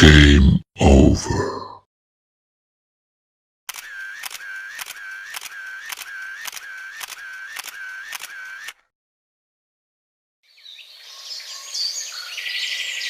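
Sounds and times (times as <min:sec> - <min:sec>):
camera shutter clicking: 0:03.7 - 0:08.8
camera wind-on whirring: 0:03.7 - 0:08.8.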